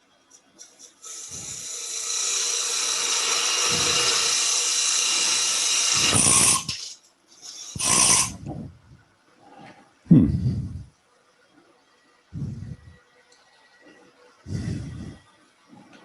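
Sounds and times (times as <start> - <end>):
gouge cutting wood on lathe: 1.0 - 6.9, 7.6 - 8.3.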